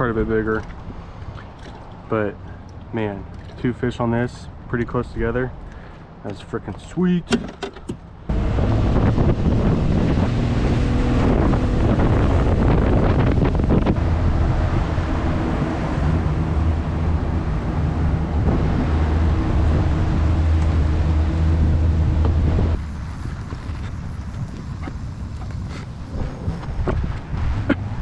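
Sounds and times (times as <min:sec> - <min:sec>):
boat motor running: 0:08.3 - 0:28.0
wind buffeting microphone: 0:08.3 - 0:28.0.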